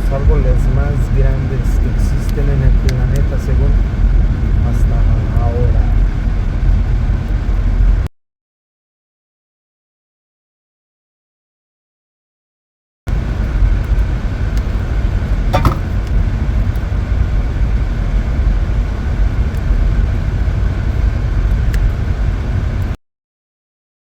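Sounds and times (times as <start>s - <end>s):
car driving road noise: 0.0s - 8.1s, 13.1s - 23.0s.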